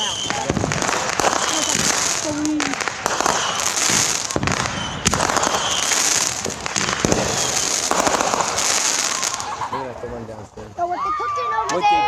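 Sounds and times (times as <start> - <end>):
sharp firework burst: 0.0 - 9.7
fireworks crackling and popping: 0.0 - 12.0.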